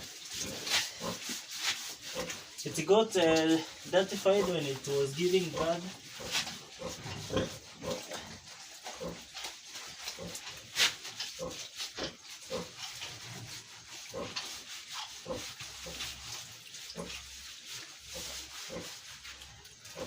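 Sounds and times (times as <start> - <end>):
hose water hissing and splashing: 0.0 - 20.0
pig grunting: 3.4 - 8.4.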